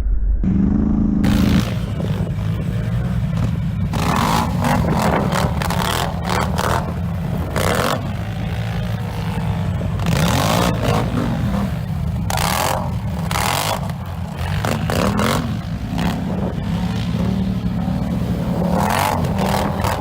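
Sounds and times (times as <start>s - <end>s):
bursts of rushing noise: 0.0s - 20.0s
atv engine running: 0.5s - 20.0s.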